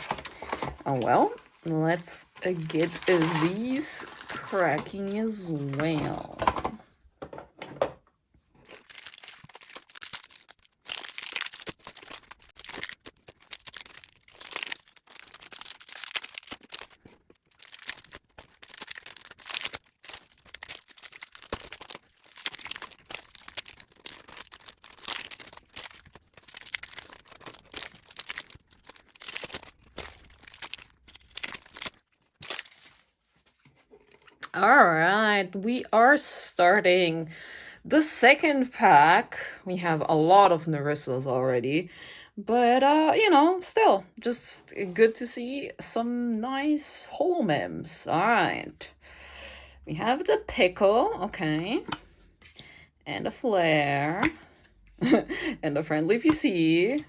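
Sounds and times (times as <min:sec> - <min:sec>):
plastic and foil wrapping crinkling: 0:00.0 - 0:34.5, 0:44.7 - 0:45.4, 0:49.8 - 0:52.7, 0:53.9 - 0:57.0.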